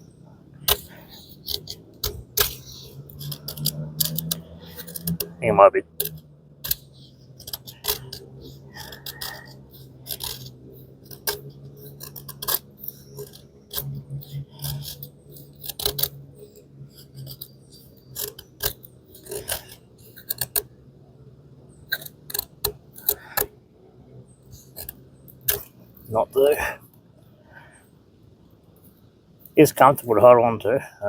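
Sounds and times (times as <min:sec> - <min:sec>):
knife scraping wood: 0:00.6 - 0:05.4, 0:06.0 - 0:20.7, 0:21.8 - 0:23.5, 0:24.5 - 0:25.7.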